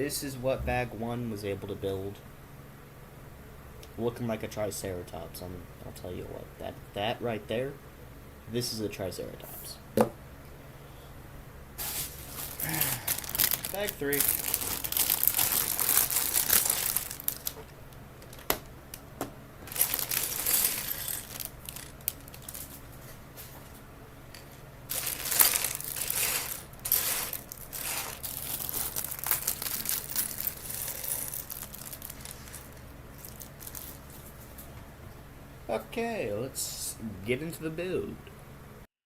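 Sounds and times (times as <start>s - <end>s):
plastic bag crinkling and tearing: 11.8s - 17.6s, 19.6s - 22.8s, 24.9s - 34.4s.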